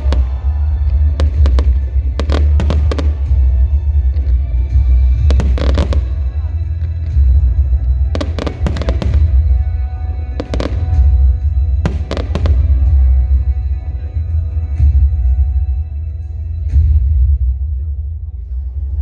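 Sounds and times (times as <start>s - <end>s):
fireworks bursting with sharp bangs: 0.0s - 7.2s, 8.0s - 13.7s
low rumble: 0.0s - 19.0s
music: 0.0s - 19.0s.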